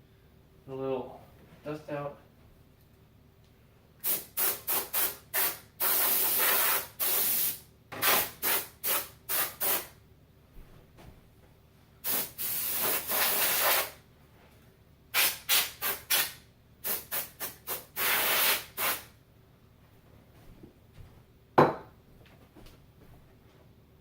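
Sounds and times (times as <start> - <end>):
compressed air blasting: 4.0 - 10.0, 12.0 - 14.0, 15.1 - 19.1.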